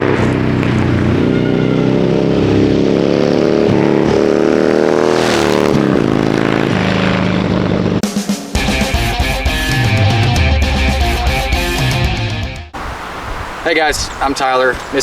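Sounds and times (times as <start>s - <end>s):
motorcycle engine revving: 0.0s - 11.5s
rock music: 8.0s - 12.7s.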